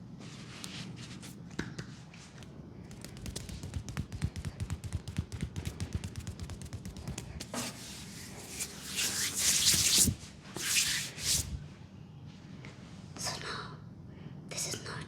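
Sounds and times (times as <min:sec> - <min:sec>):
percussive massage taps: 0:02.9 - 0:07.6
hands rubbing over skin: 0:02.9 - 0:11.6.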